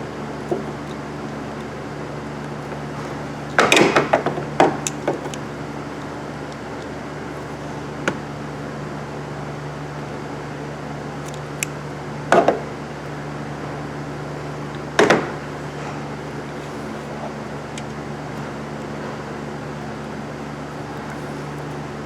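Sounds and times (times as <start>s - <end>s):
steady low hum: 0.0s - 22.0s
light clicks: 11.2s - 11.8s.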